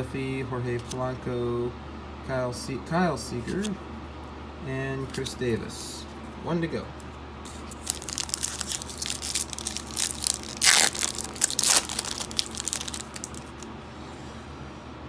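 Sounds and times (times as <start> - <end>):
foil wrapper crinkling: 7.5 - 13.7
foil wrapper ripping: 7.5 - 13.7.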